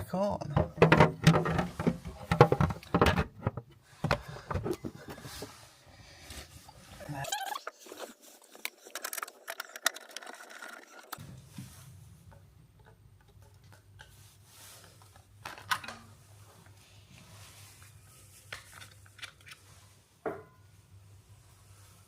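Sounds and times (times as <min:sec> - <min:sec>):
plastic lid knocking and clicking: 0:00.5 - 0:04.8.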